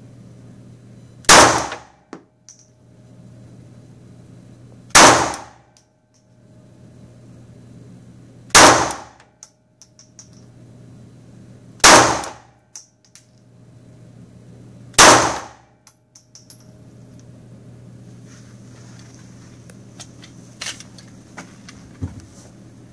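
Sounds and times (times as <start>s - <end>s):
pistol shots: 1.3s - 1.9s, 4.9s - 5.6s, 8.5s - 9.2s, 11.8s - 12.5s, 15.0s - 15.6s.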